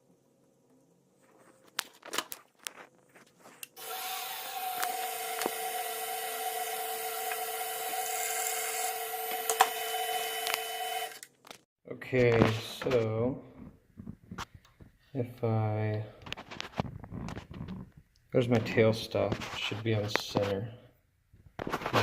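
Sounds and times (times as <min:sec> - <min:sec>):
machine-tool motor whining: 0:03.8 - 0:11.3.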